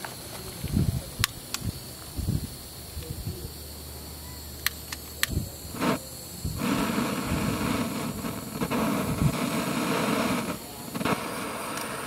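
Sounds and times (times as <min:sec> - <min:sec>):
gas torch flame hissing: 0:00.0 - 0:12.0
sharp clicks: 0:04.6 - 0:06.0, 0:10.4 - 0:12.0.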